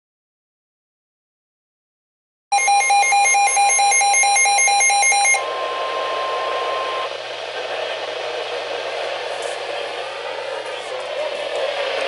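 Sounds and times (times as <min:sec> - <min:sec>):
alarm steady tone: 0:02.5 - 0:07.1
rapid electronic beeping: 0:02.6 - 0:07.1
radio static hiss: 0:05.4 - 0:12.0.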